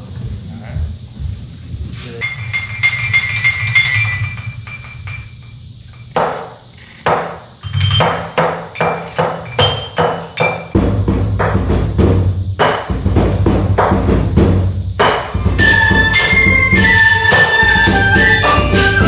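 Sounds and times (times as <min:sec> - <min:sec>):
pitched percussion strikes ringing: 0:07.6 - 0:19.0.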